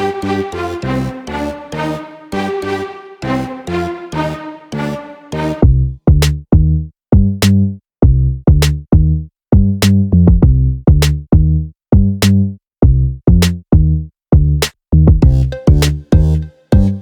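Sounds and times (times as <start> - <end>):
electronic drum-machine beat: 15.2 - 17.0.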